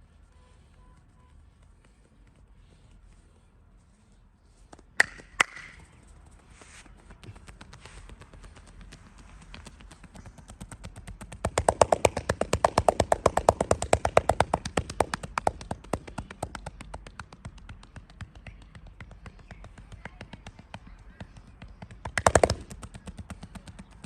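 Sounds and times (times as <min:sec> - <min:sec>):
hands slapping on body: 0:04.7 - 0:05.9, 0:07.2 - 0:23.9.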